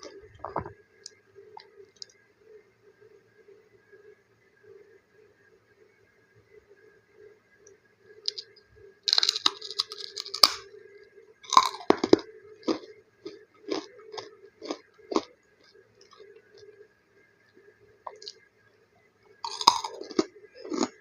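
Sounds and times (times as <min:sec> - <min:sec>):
faint steady hum: 0:00.0 - 0:21.0
crunching crispy snack: 0:08.3 - 0:10.7, 0:11.4 - 0:16.7, 0:19.5 - 0:21.0.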